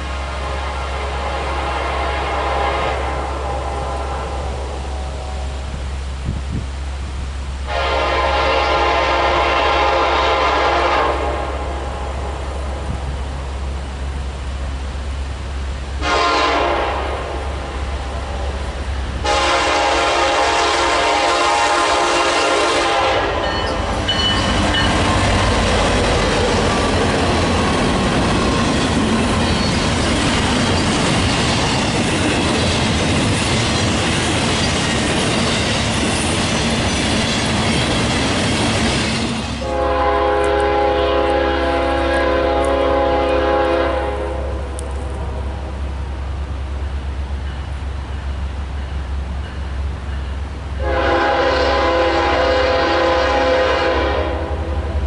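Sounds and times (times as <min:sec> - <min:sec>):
train horn blasts: 0:00.0 - 0:05.9, 0:07.6 - 0:13.1, 0:16.0 - 0:18.6, 0:19.2 - 0:27.2, 0:39.6 - 0:45.9, 0:50.8 - 0:55.0
train passing clattering: 0:00.0 - 0:55.0.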